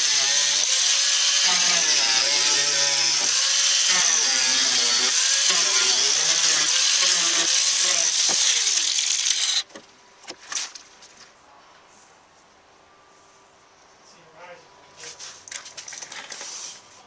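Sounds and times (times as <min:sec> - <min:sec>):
power tool cutting sheet metal: 0:00.0 - 0:09.7.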